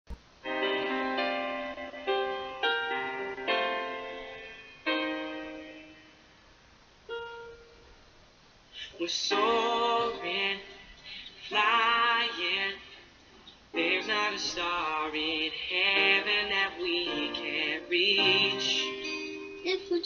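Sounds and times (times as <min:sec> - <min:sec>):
piano chords ringing: 0:00.3 - 0:08.2, 0:09.2 - 0:12.8, 0:13.7 - 0:20.0
person singing: 0:08.8 - 0:13.0, 0:13.7 - 0:20.0.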